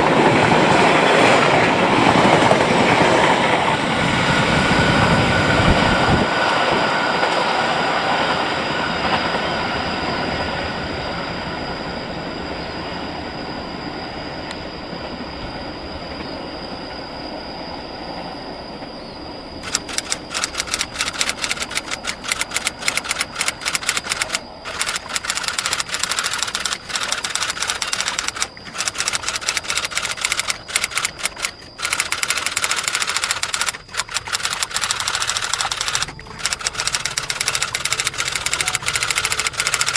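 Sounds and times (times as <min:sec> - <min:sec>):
train rumble and wheel noise: 0:00.0 - 0:39.9
rapid dense clicking: 0:19.6 - 0:39.9.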